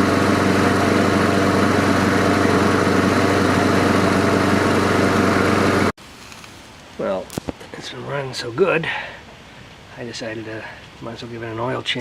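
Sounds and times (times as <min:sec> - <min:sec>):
lawn mower engine running: 0:00.0 - 0:05.9.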